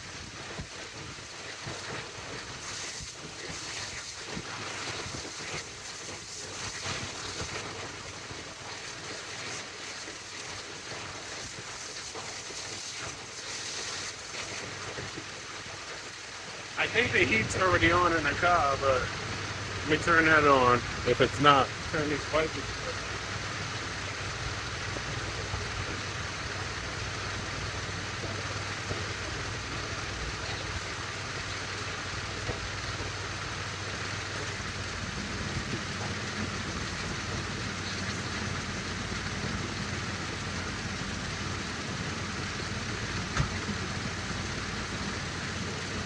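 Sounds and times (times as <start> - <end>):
heater blower fan hiss: 0.0 - 46.0
car engine idling: 16.7 - 46.0.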